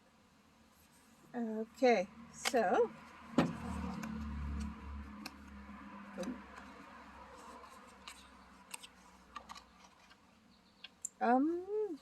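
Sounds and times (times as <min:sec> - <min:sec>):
cards and cardboard box handled: 0:07.4 - 0:10.3.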